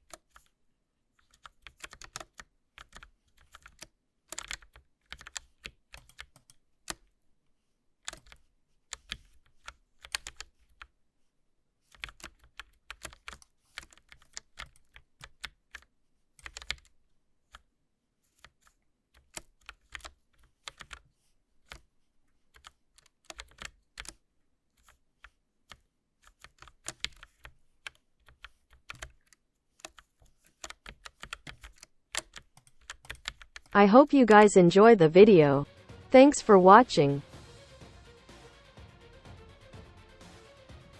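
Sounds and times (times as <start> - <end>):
mechanical keyboard clicks: 1.3 - 7.0, 30.6 - 33.7.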